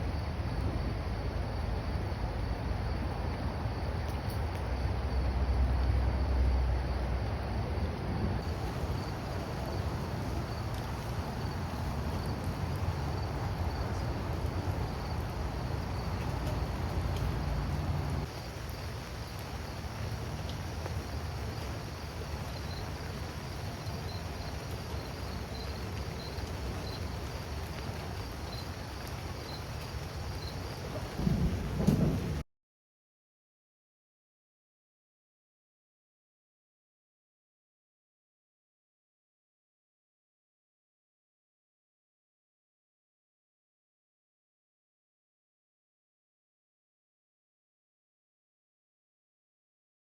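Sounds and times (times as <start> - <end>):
low rumbling background: 0.0 - 18.3
crickets chirping: 0.0 - 32.4.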